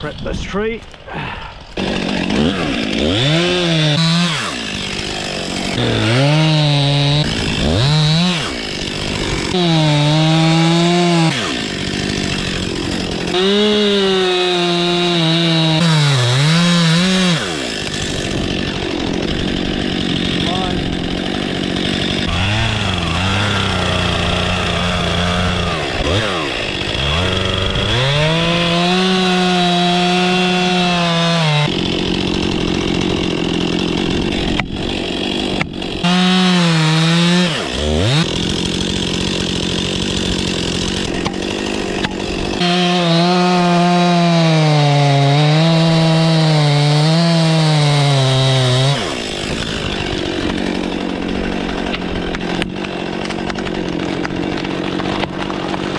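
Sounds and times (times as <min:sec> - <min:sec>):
chainsaw revving through wood: 0:01.2 - 0:55.9.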